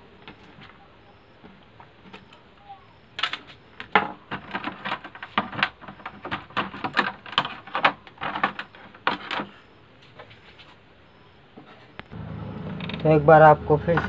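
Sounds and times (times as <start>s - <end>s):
clicks and knocks of handled parts: 3.2s - 10.8s.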